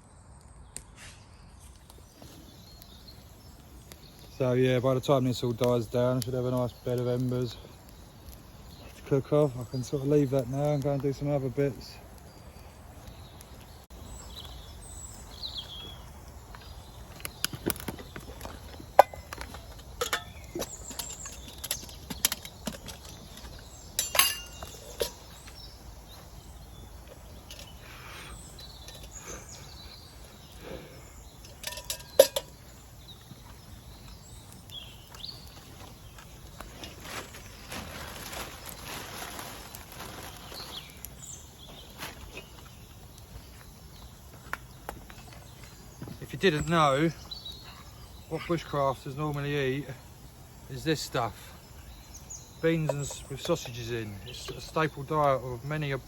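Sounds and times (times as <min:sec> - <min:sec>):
bird chirps: 0:00.0 - 0:56.0
sharp knocks and cracks: 0:17.1 - 0:25.2.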